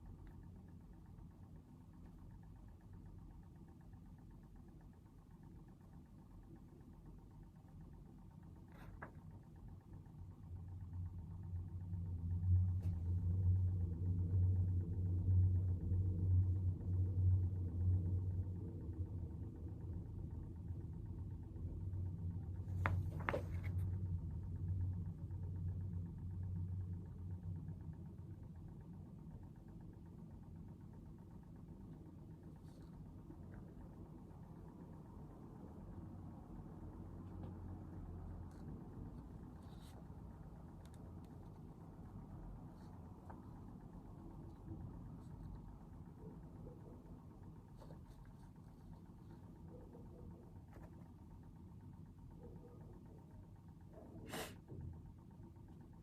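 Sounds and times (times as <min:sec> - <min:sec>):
low engine-like rumble: 0:00.0 - 0:56.0.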